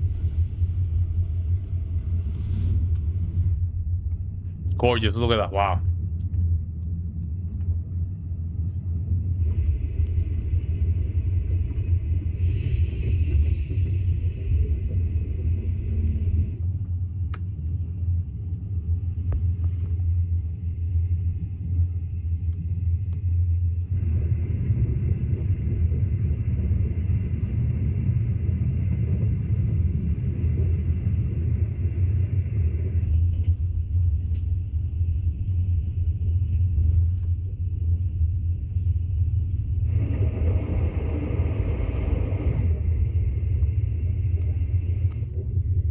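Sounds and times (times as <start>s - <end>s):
moving train rumbling: 7.8s - 33.6s, 39.8s - 45.9s.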